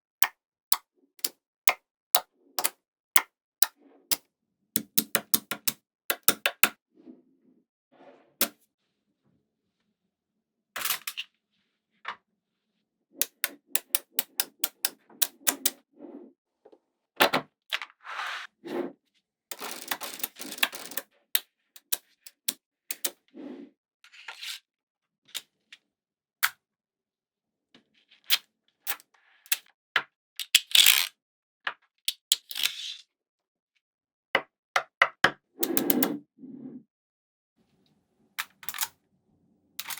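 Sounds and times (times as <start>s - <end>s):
magnetic balls snapping together: 1.2s - 1.8s, 2.6s - 3.3s, 4.8s - 6.8s, 13.2s - 15.8s, 35.6s - 36.2s.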